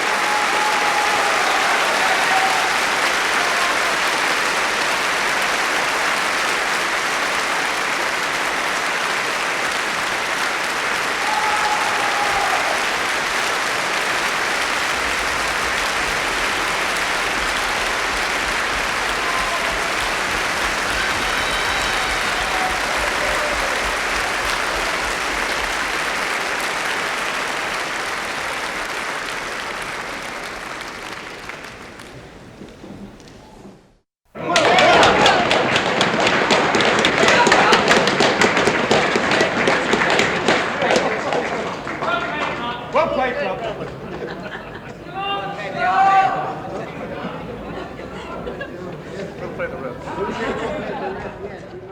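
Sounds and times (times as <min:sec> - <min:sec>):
crowd applauding: 0:00.0 - 0:33.3, 0:34.3 - 0:51.4
faint whistles and shouts: 0:20.7 - 0:24.2.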